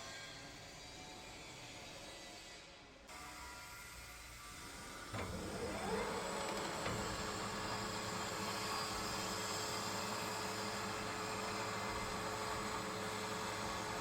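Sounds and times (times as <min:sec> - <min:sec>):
metal lathe motor humming: 0:05.1 - 0:14.0.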